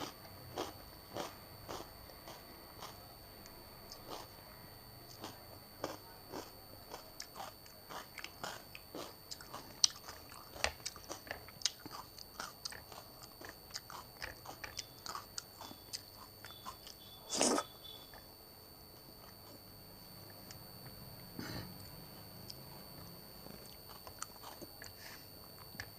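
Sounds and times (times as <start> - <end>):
crisp chewing and biting: 5.1 - 18.2, 23.5 - 25.0.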